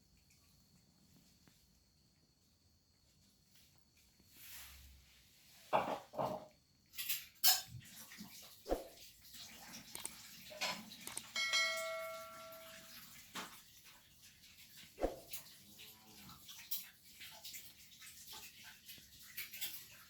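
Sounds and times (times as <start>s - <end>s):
short metallic ring: 11.3s - 12.9s.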